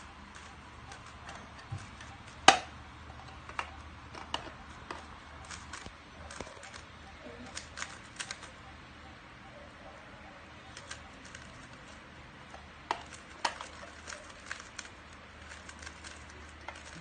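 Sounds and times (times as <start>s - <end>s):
puzzle cube clicks: 0.3s - 8.6s, 10.7s - 17.0s.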